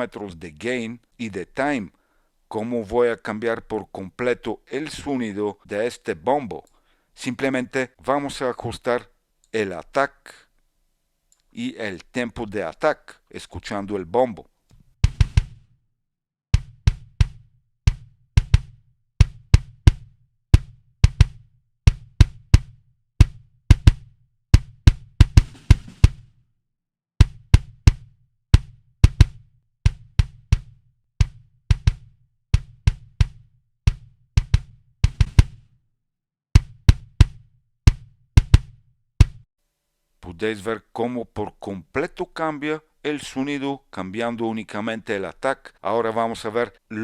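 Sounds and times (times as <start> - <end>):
kick drum hits: 15.0 - 15.6, 16.6 - 26.3, 27.2 - 35.6, 36.6 - 39.4.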